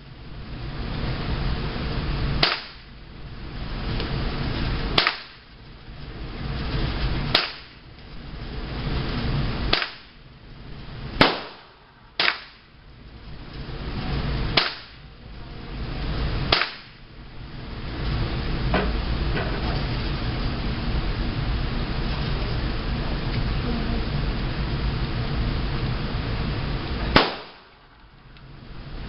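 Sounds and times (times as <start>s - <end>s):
gunshots: 2.4s - 2.8s, 5.0s - 5.4s, 7.3s - 7.8s, 9.7s - 10.1s, 11.2s - 12.6s, 14.6s - 15.0s, 16.5s - 16.9s, 27.2s - 27.7s.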